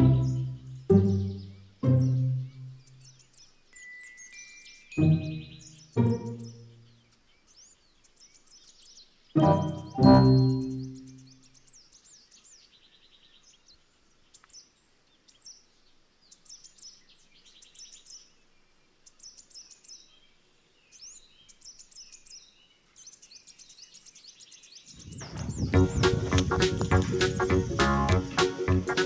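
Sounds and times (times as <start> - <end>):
music: 0.0 - 2.8, 3.8 - 6.8, 9.4 - 11.2, 25.2 - 29.0
birds chirping and trilling: 0.0 - 29.0.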